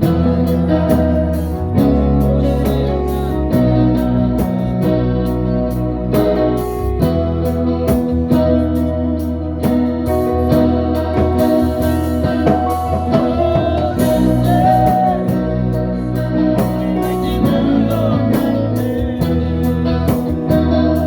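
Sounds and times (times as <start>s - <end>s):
steady drum beat: 0.0s - 5.0s, 9.6s - 21.0s
bass line: 0.0s - 21.0s
guitar: 0.0s - 21.0s.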